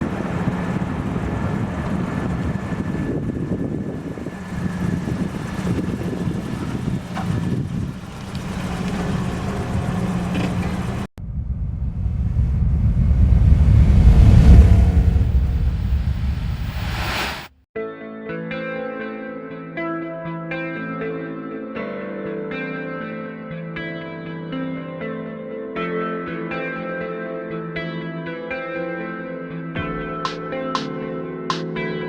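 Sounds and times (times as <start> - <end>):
car engine running: 0.0 - 17.0
deeper engine sound: 0.0 - 17.5.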